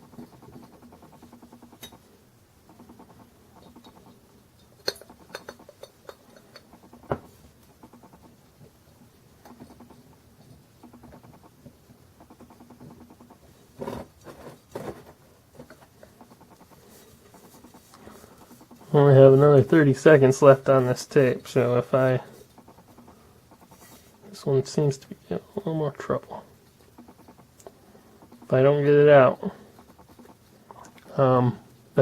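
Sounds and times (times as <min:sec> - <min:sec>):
metal tool scraping and clicking: 0:04.6 - 0:06.8
sharp metal clicks: 0:04.8 - 0:07.1.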